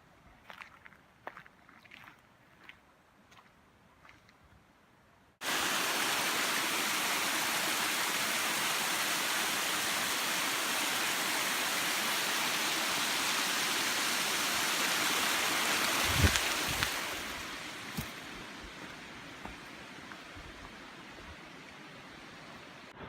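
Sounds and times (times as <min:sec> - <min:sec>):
footsteps on a trail: 0:00.3 - 0:04.4, 0:15.8 - 0:20.8
rushing creek water: 0:05.4 - 0:23.0.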